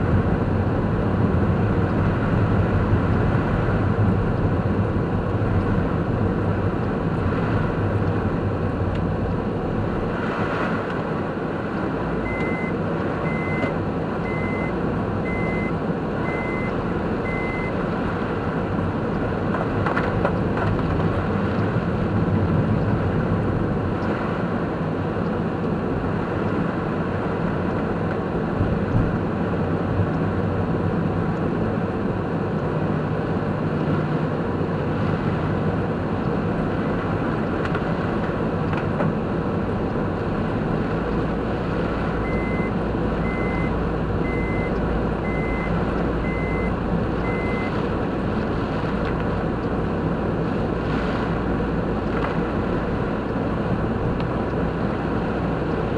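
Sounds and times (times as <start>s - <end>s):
car road and engine noise: 0.0s - 55.9s
short high beeps: 12.3s - 13.7s, 14.3s - 14.7s, 15.3s - 17.7s, 42.2s - 47.7s.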